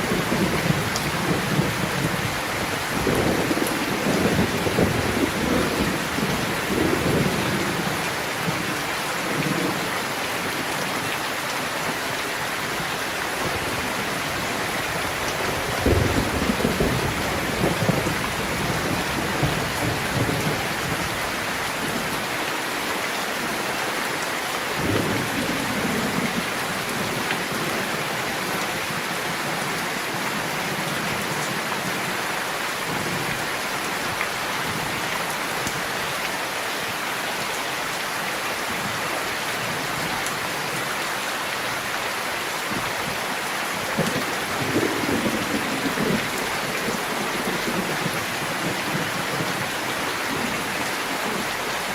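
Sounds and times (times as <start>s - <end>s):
steady rain falling: 0.0s - 51.9s
thunder rumbling: 13.4s - 21.1s.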